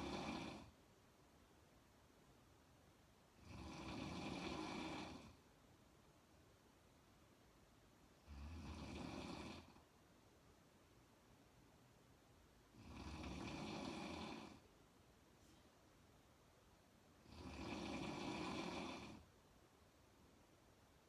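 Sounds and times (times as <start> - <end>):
woman snoring: 0.0 - 0.8, 3.4 - 5.4, 8.2 - 9.8, 12.8 - 14.6, 17.2 - 19.2.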